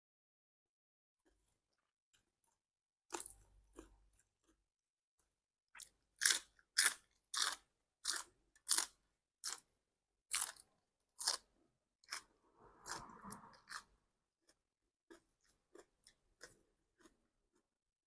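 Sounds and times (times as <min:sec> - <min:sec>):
person chewing crunchy food: 0:03.1 - 0:04.7, 0:05.8 - 0:09.7, 0:10.3 - 0:17.8.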